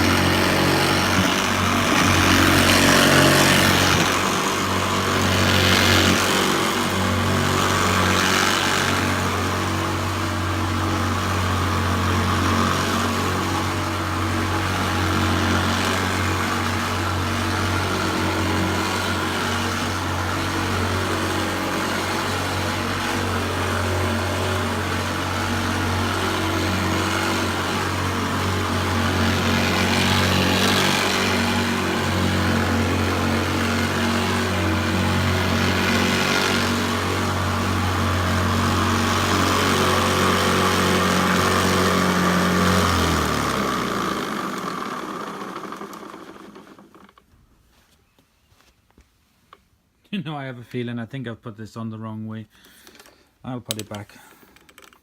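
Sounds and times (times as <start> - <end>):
vacuum cleaner running on carpet: 0.0 - 47.1.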